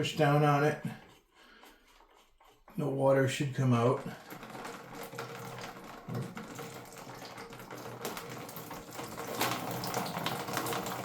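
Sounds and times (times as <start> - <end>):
water splashing into a bucket: 4.0 - 11.0.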